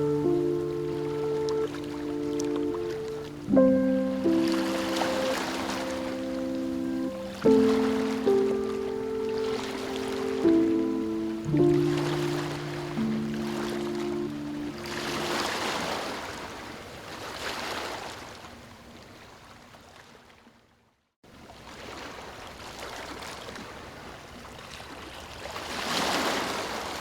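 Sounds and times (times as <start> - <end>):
ocean waves washing in: 0.0 - 18.3.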